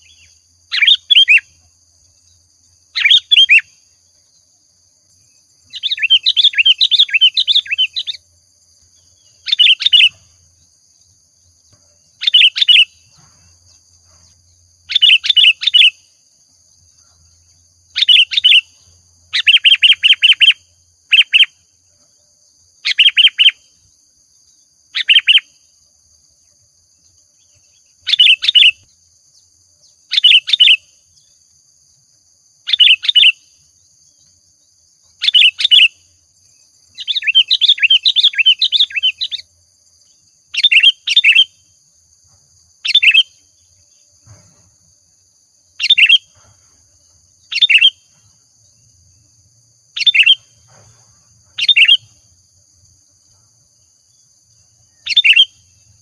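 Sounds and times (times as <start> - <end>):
bird singing bubbly phrases: 0.0 - 1.4, 3.0 - 3.7, 5.7 - 8.2, 12.2 - 12.9, 14.9 - 16.0, 25.0 - 25.4.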